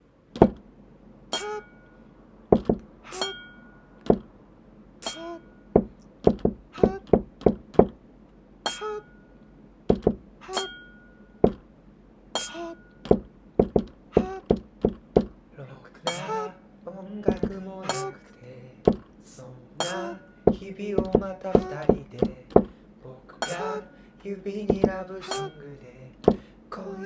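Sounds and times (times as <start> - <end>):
sharp knocks and clicks: 0.3 - 0.7, 2.5 - 2.9, 4.0 - 4.3, 5.0 - 8.0, 9.9 - 10.7, 11.4 - 11.7, 12.4 - 15.4, 17.3 - 18.0, 18.9 - 19.1, 19.8 - 22.8, 24.7 - 25.5, 26.2 - 26.5
pitched ringing clinks: 3.1 - 3.9, 5.0 - 5.7, 10.4 - 11.4, 23.4 - 23.7, 25.2 - 25.6.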